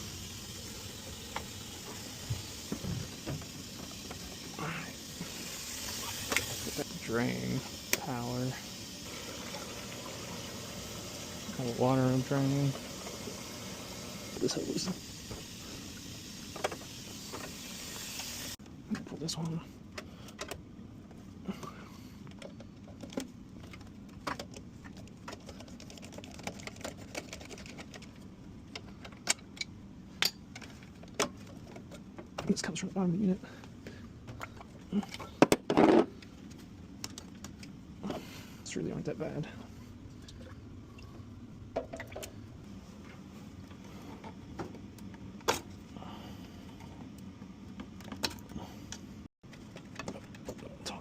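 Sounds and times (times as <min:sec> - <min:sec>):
hoses and fittings clicking: 0:22.2 - 0:32.6, 0:36.2 - 0:38.2.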